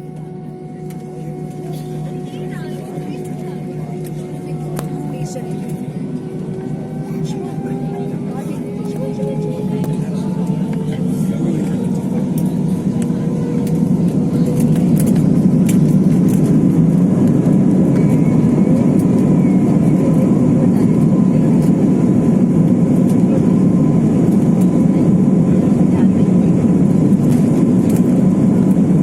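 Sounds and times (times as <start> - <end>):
jet engines rushing in cabin: 0.0 - 29.0.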